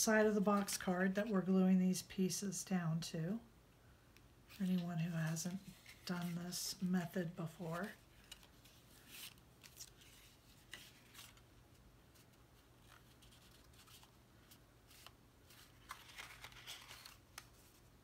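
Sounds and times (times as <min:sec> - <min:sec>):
low steady hum: 0:00.0 - 0:18.0
paper rustling: 0:04.5 - 0:06.8, 0:07.5 - 0:17.9.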